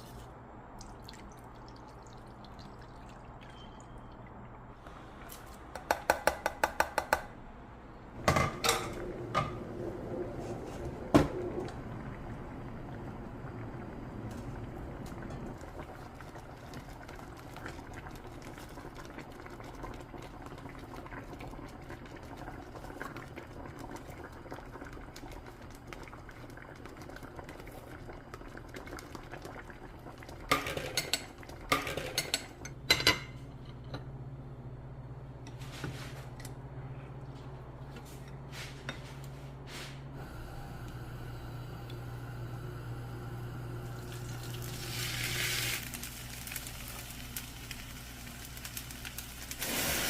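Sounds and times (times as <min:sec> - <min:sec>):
simmering bubbling: 0:00.8 - 0:04.8, 0:11.4 - 0:30.5
steady low hum: 0:31.2 - 0:44.8.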